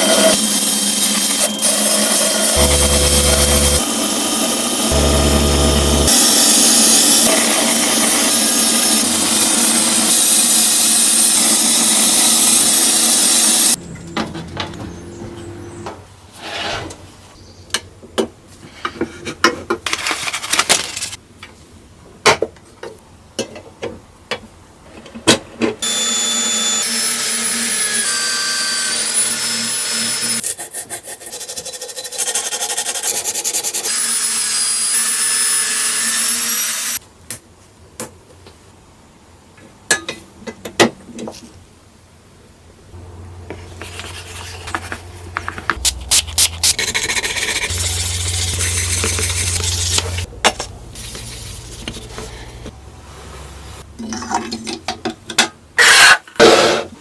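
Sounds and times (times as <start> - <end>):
power tool running under load: 0.0 - 13.8, 25.8 - 30.4, 33.9 - 37.0
hand scraping and rubbing: 43.5 - 53.9.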